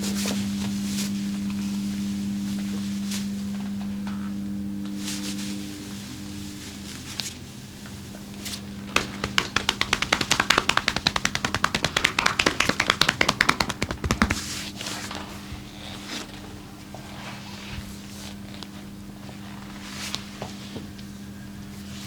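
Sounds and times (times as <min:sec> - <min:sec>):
hands slapping body in massage: 0:08.8 - 0:14.7.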